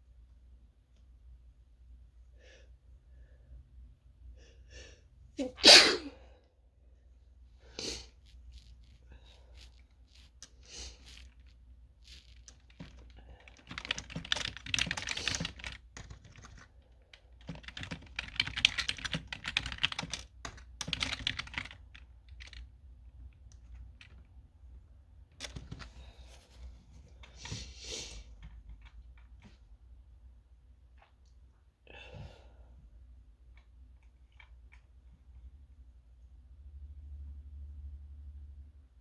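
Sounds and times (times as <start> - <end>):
keyboard typing clicks: 12.4 - 16.7, 17.4 - 22.6.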